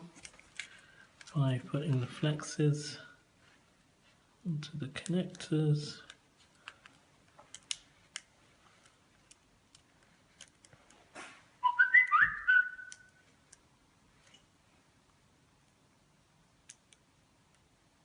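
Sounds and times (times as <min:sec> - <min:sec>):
rising whistle: 0:11.6 - 0:13.1.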